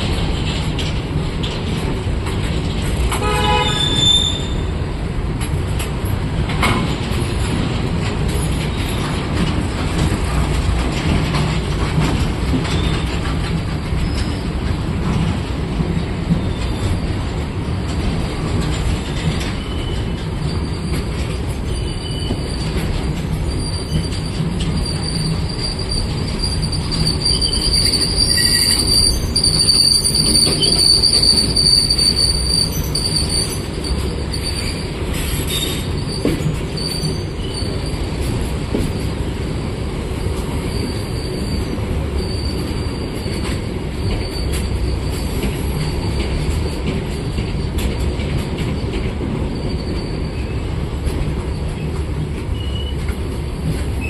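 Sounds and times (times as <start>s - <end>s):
train wheels rumbling on track: 0.0s - 54.0s
train horn blast: 3.1s - 4.0s
high-pitched wheel squeal: 3.5s - 4.7s, 21.7s - 22.8s, 23.5s - 37.8s, 52.5s - 53.0s.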